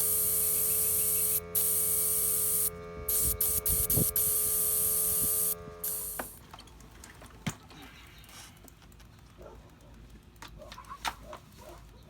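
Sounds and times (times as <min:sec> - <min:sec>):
compressed air hissing into tire: 0:00.0 - 0:06.4
steady hum: 0:00.0 - 0:06.4.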